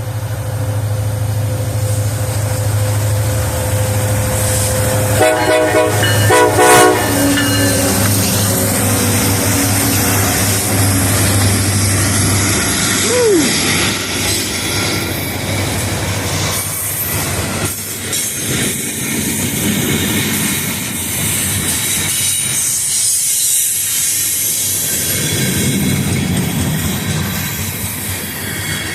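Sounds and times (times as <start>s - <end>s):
low engine drone: 0.0s - 14.3s
freight cars rumbling on rails: 0.0s - 28.9s.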